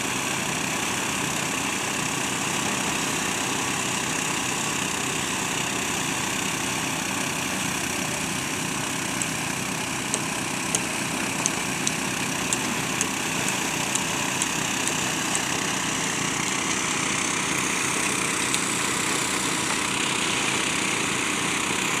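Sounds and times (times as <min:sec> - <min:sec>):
small engine running: 0:00.0 - 0:22.0
sharp ticks: 0:10.0 - 0:15.8.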